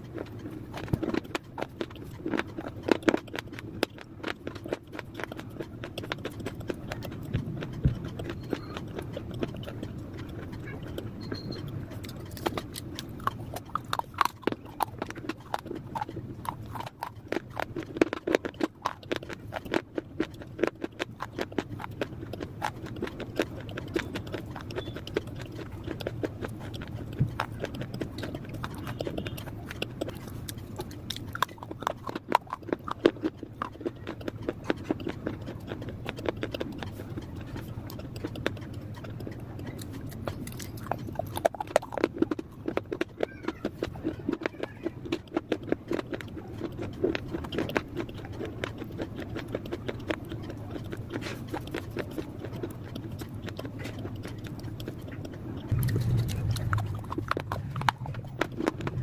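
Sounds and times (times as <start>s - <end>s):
clay being chewed crunching: 0.0s - 59.0s.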